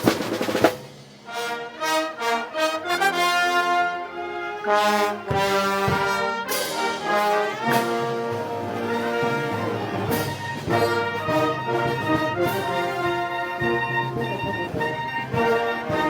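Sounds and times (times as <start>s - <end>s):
brass band playing march: 0.0s - 16.0s.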